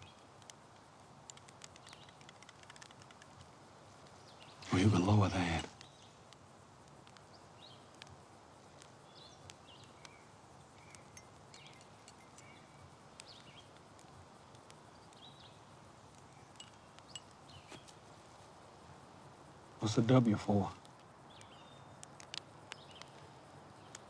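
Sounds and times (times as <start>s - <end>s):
faint bird chirps: 1.2s - 3.4s, 7.2s - 18.2s, 21.2s - 24.0s.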